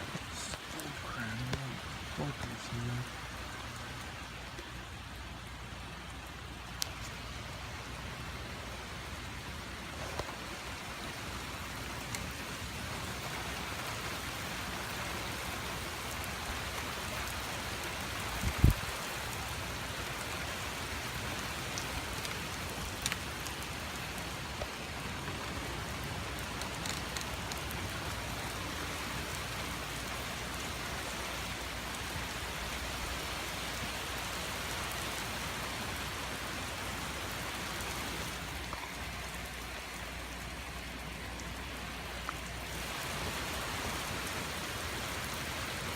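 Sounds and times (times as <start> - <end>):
heavy rain: 0.0 - 45.9
faint ticks: 6.7 - 7.2, 12.0 - 12.3, 23.0 - 23.6, 26.2 - 27.9.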